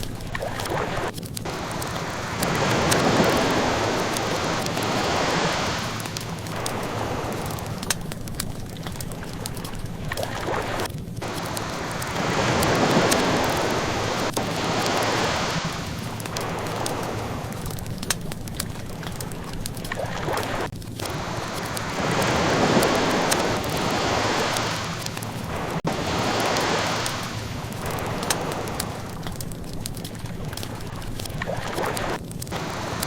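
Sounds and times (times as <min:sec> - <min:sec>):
ocean waves washing onto shore: 0:00.0 - 0:33.0
wood fire crackling: 0:00.0 - 0:33.0.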